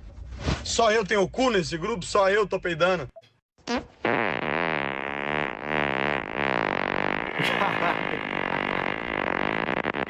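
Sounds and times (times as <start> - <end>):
long buzzing fart: 3.6 - 10.0.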